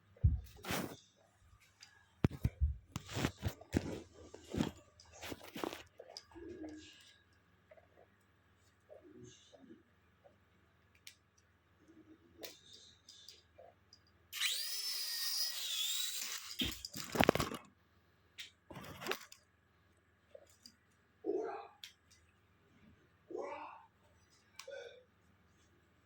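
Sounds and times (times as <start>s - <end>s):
toy propeller motor whining: 14.3s - 17.5s.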